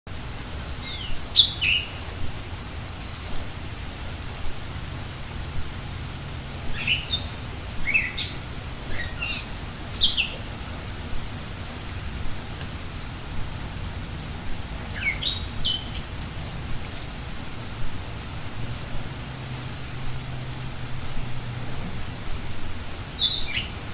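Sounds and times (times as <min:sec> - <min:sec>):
steady rain falling: 0:00.1 - 0:23.9
bird calling: 0:00.8 - 0:02.0, 0:06.7 - 0:10.5.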